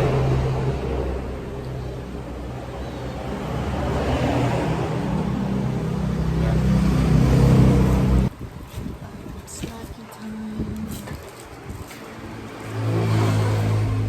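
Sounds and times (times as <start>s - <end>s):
vehicle engine speeding up: 0.0s - 8.3s, 12.4s - 14.0s.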